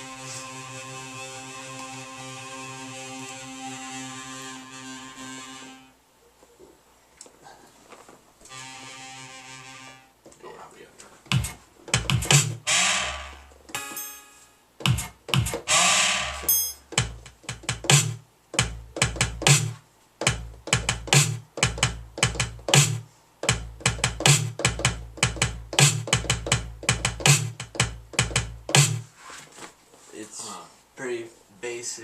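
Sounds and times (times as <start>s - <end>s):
electronic drum machine beat: 11.3s - 14.0s, 14.8s - 15.8s, 16.4s - 29.0s.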